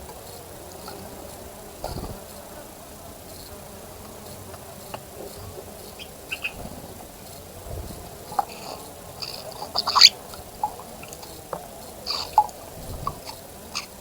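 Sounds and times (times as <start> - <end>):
insect buzzing: 0.0 - 14.0
faint chirps: 5.3 - 14.0.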